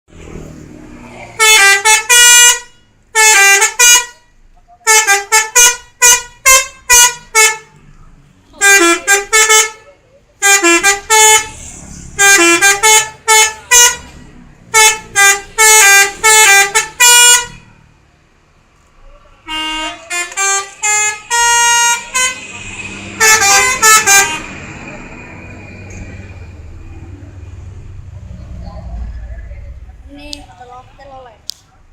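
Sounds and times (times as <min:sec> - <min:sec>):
air horn playing melodic phrases: 0:01.4 - 0:04.3, 0:04.9 - 0:07.7, 0:08.6 - 0:11.6, 0:12.2 - 0:17.7, 0:19.4 - 0:24.8.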